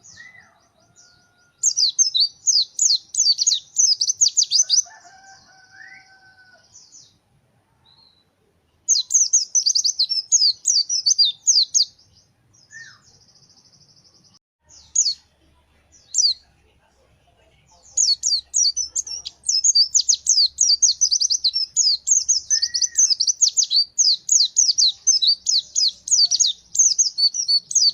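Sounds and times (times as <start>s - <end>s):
bird singing sweeping notes: 8.9s - 13.6s, 17.9s - 27.9s.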